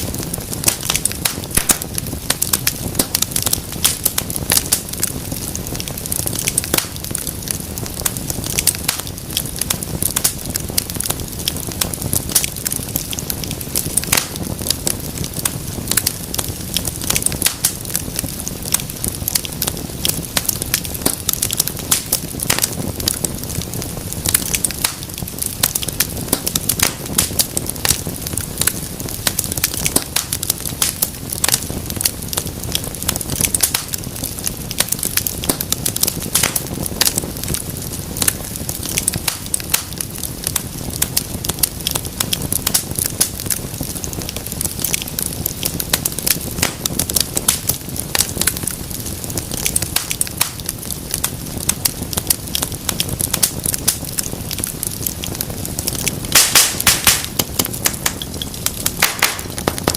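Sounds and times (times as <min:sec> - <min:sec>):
hiss of burning: 0:00.0 - 0:59.9
wood fire crackling: 0:00.0 - 0:59.9.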